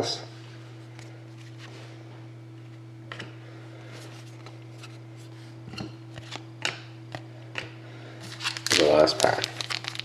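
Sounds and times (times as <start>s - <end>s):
steady low hum: 0.0s - 10.0s
cards and packaging handling: 8.2s - 10.0s.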